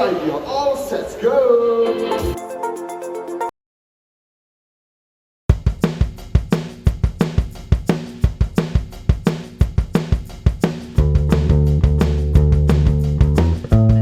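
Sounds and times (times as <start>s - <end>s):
drum beat with cymbals: 5.5s - 14.0s
sustained bass and chords: 11.0s - 14.0s.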